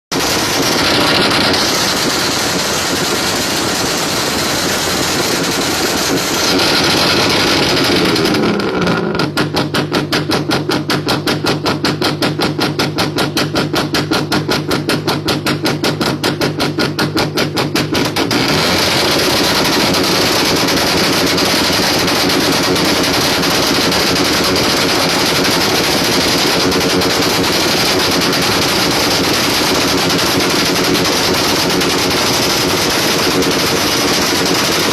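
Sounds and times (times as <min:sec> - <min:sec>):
stuttering pulses over low tone: 0:00.1 - 0:09.9, 0:17.3 - 0:34.9.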